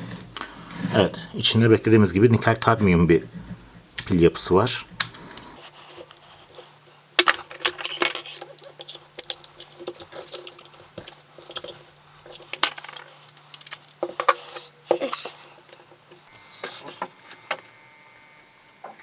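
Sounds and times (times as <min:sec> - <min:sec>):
plastic casing clicks and clatter: 0:05.6 - 0:17.6.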